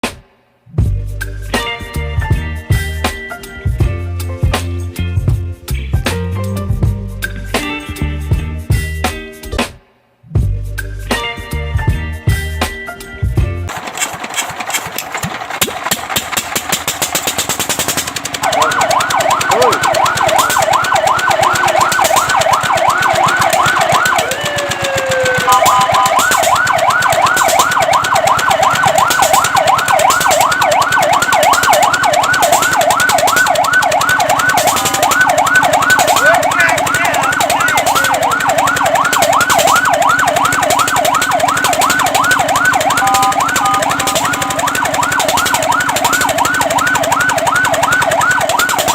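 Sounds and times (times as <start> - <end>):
fast even clicking: 13.7 - 48.9
fire truck siren yelping: 13.7 - 48.9.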